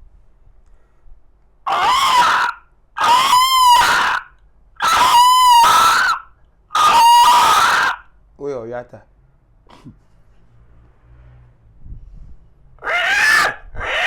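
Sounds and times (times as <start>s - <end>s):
man imitating animal call: 1.7s - 6.2s, 6.8s - 8.0s.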